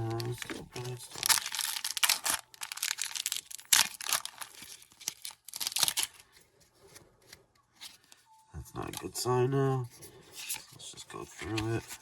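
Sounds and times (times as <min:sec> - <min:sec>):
foil wrapper tearing and crinkling: 0:00.0 - 0:06.3.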